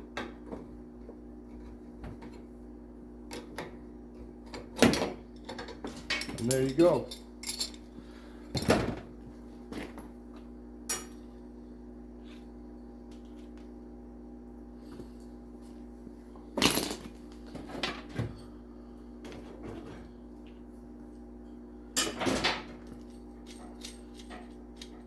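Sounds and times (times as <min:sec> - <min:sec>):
steady low hum: 0:00.0 - 0:25.0
metal tools clunking: 0:05.5 - 0:07.8.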